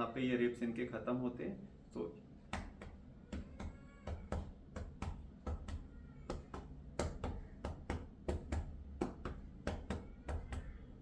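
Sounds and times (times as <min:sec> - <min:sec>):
hand patting on chest: 0:02.4 - 0:10.8.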